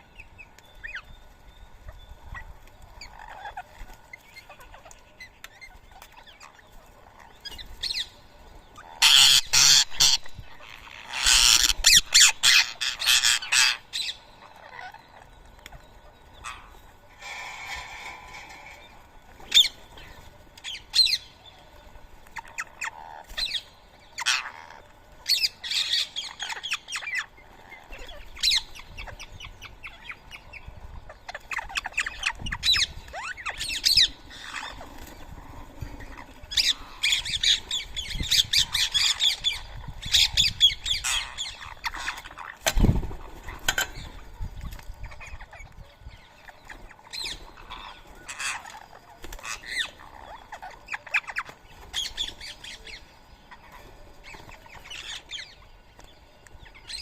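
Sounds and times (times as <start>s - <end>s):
birds squawking and chattering: 0.0s - 57.0s.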